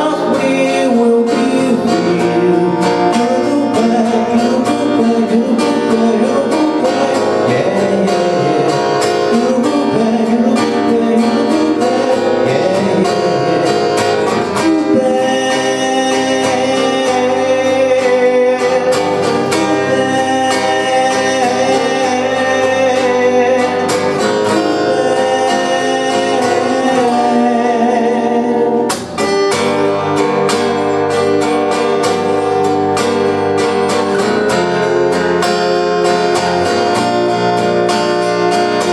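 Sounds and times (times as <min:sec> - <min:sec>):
person singing: 0:00.0 - 0:29.2
acoustic guitar music: 0:00.0 - 0:38.9.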